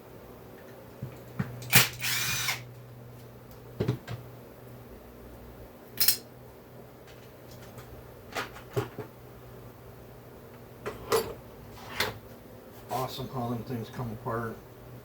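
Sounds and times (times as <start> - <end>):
metal parts clinking on hard surface: 6.0 - 6.2.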